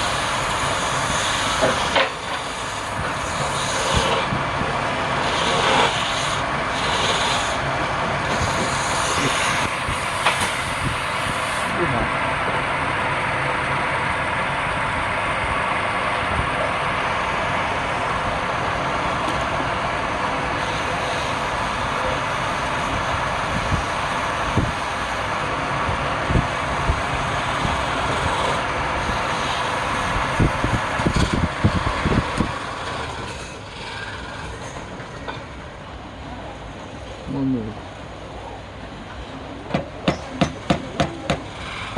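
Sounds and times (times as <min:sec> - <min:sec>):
wood lathe rasping: 0:00.0 - 0:11.8, 0:18.3 - 0:35.1, 0:40.7 - 0:41.9
quiet machine hum: 0:00.0 - 0:41.9.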